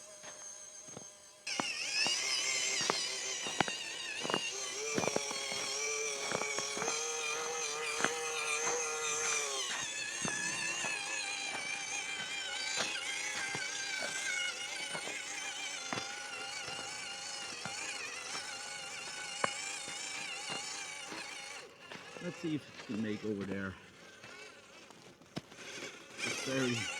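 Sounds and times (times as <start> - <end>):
toy car motor whining: 0.0 - 26.9.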